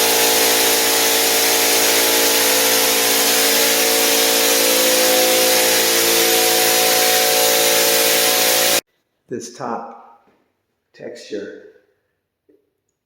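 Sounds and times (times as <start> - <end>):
air compressor humming: 0.0 - 8.8
compressed air hissing: 0.0 - 8.8.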